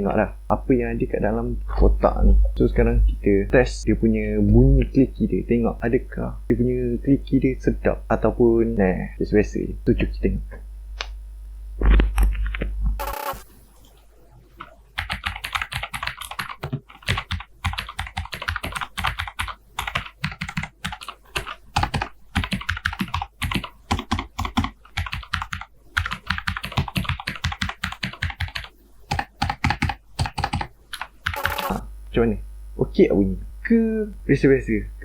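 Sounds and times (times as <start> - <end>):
fast mechanical keyboard typing: 14.6 - 31.8.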